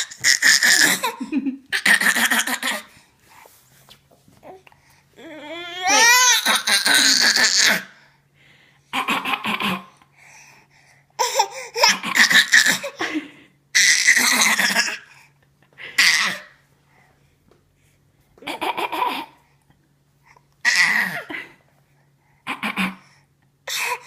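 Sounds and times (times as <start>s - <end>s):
baby squealing: 0.0s - 1.2s, 5.4s - 7.8s
baby laughing: 0.0s - 2.9s.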